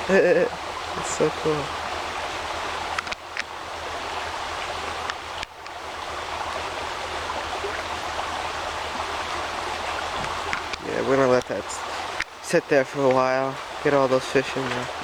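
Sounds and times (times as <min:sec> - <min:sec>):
creek rushing over rocks: 0:00.0 - 0:15.0
faint clicks: 0:02.9 - 0:03.5.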